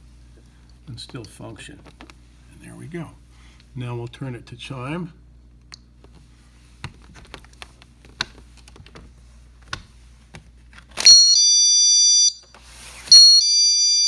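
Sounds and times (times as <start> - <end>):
high electronic alarm chime: 11.1 - 12.4, 13.1 - 14.0.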